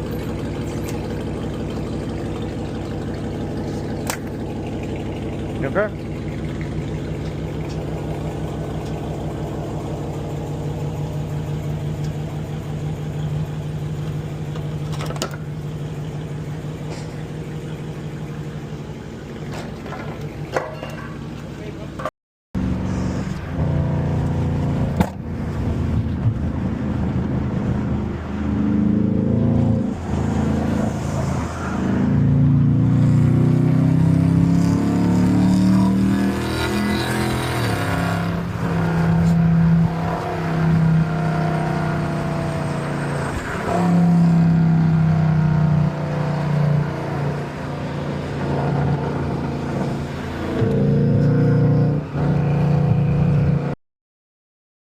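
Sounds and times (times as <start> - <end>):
car engine revving: 0.0 - 19.5, 22.6 - 53.8.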